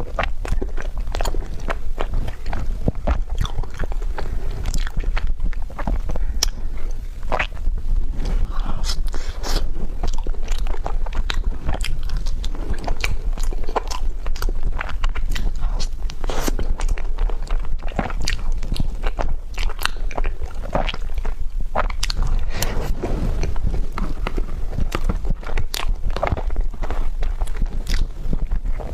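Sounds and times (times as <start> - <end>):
wet mouth clicks: 0.0 - 22.8
chewing and biting: 0.0 - 28.9.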